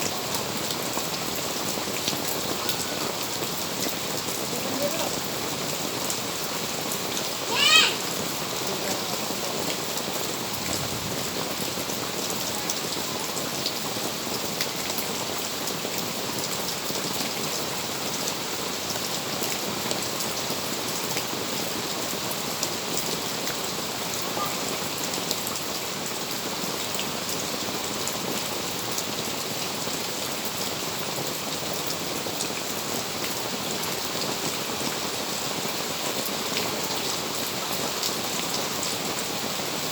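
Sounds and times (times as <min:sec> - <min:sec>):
steady rain falling: 0:00.0 - 0:39.9
loud high-pitched cry: 0:07.5 - 0:08.1.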